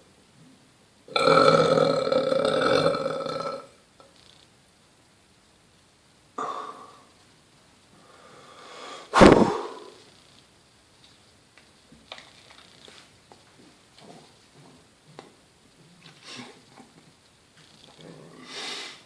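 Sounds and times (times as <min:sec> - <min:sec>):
person burping: 0:01.1 - 0:03.8.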